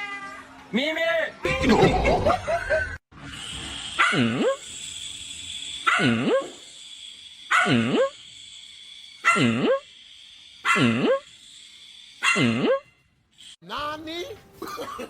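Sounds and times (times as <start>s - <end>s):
dog barking: 4.0s - 4.6s, 5.8s - 6.5s, 7.5s - 8.1s, 9.2s - 9.5s, 10.6s - 11.2s, 12.2s - 12.8s.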